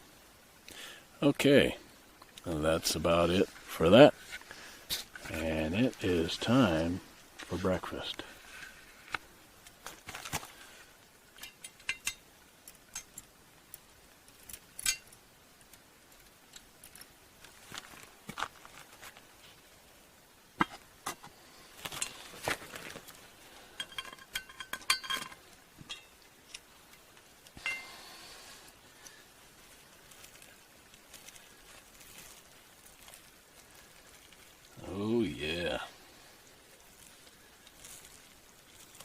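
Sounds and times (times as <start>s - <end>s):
metal cookware clinking: 11.4s - 12.2s, 23.8s - 26.2s, 27.6s - 27.9s.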